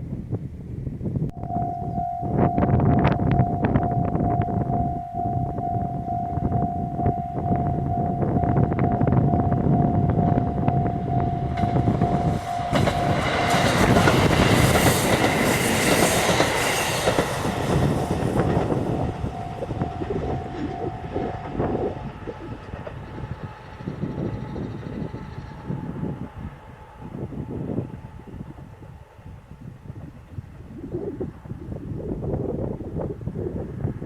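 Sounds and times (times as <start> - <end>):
crossing warning bell: 1.3 - 29.0
diesel train rumbling past: 1.4 - 30.7
wheels clattering over rail joints: 11.4 - 27.0.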